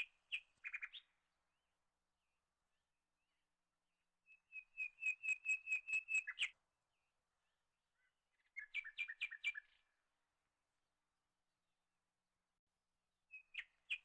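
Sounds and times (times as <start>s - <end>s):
bird singing repeated notes: 4.3s - 6.6s.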